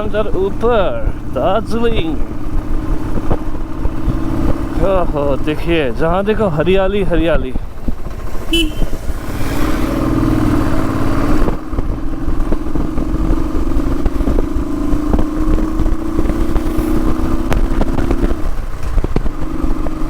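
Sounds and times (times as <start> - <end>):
motorcycle engine under load: 0.0 - 20.0.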